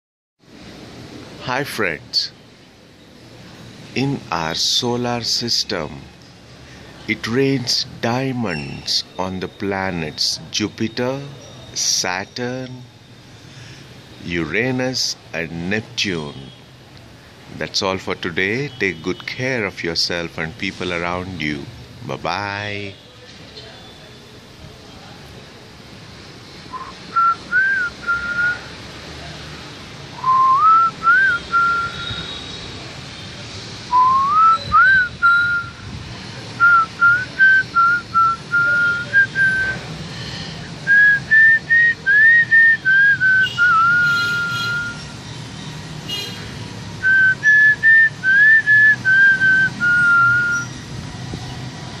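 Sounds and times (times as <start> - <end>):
person whistling a tune: 26.7 - 28.6, 30.2 - 32.3, 33.9 - 35.8, 36.6 - 39.8, 40.9 - 45.1, 47.0 - 50.7.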